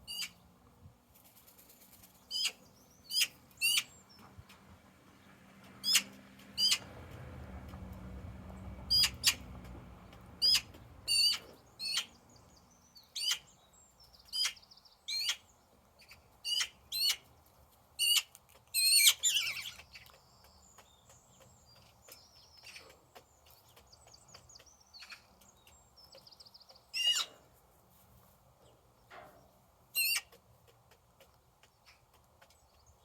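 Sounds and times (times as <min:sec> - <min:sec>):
faint bird twittering: 0:10.4 - 0:17.2.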